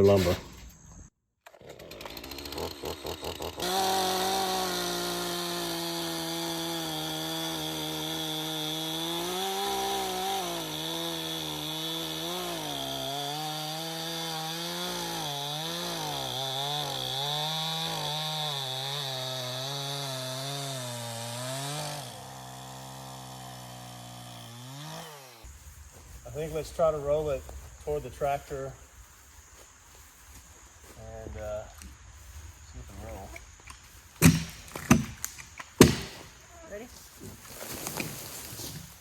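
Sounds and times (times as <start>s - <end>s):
chainsaw cutting log: 1.4s - 25.5s, 34.2s - 36.4s.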